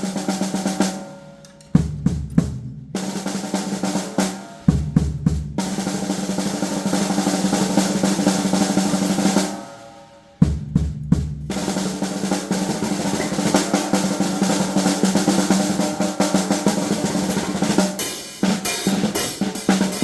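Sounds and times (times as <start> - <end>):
snare drum rolls: 0.0 - 20.0
bass drum thumps: 1.8 - 2.8.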